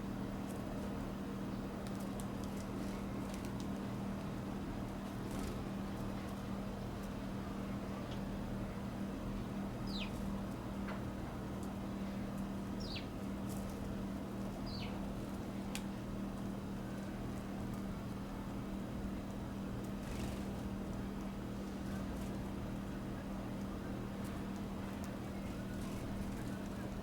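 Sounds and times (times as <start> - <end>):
steady low hum: 0.0 - 27.0
small bird call notes: 9.9 - 10.2, 12.8 - 13.1, 14.6 - 15.0.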